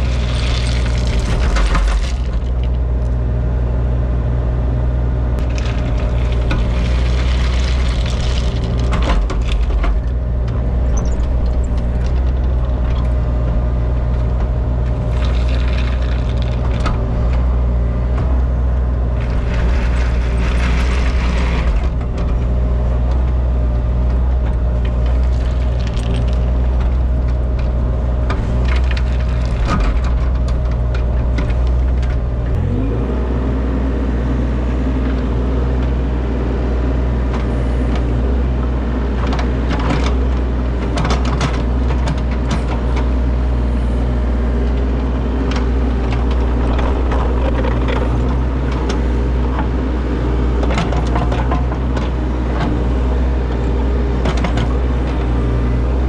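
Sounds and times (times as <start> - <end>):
rushing scraping noise: 0.0 - 2.8, 5.4 - 18.4, 19.0 - 23.1, 24.6 - 27.8, 45.5 - 52.0
excavator diesel engine running: 0.0 - 56.0.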